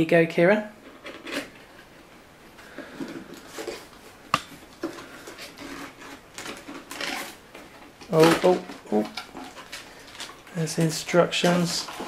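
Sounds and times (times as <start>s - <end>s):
cardboard packaging rustling: 3.0s - 12.0s.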